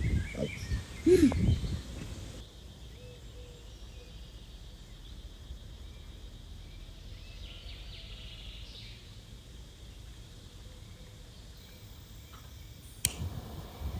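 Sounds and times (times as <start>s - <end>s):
faint bird chirps: 0.0s - 9.1s.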